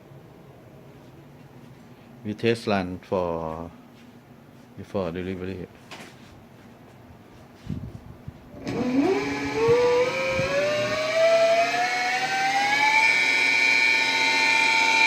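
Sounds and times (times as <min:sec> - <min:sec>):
electric motor whine: 0:08.6 - 0:15.0.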